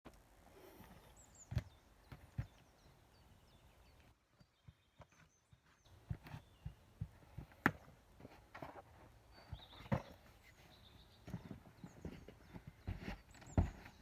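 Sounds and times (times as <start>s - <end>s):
faint bird chirps: 0.6s - 7.0s, 9.2s - 14.0s
shoes and hands knocking on rock: 5.9s - 8.4s, 11.2s - 14.0s.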